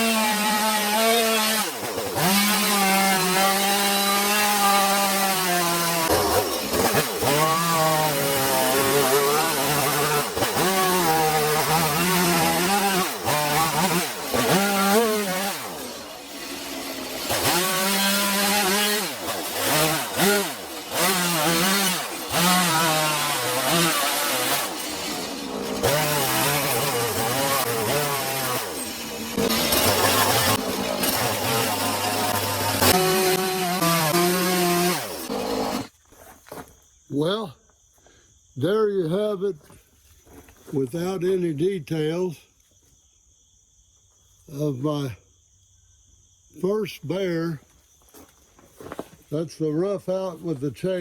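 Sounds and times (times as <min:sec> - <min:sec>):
chainsaw cutting log: 0:00.0 - 0:35.9.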